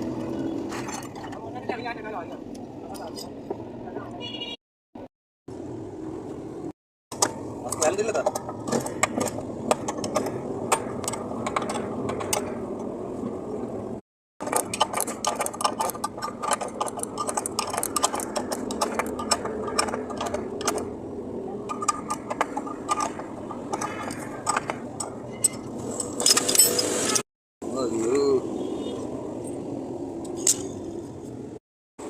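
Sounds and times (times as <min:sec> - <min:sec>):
steady rattle: 0:14.4 - 0:21.0, 0:21.6 - 0:26.7.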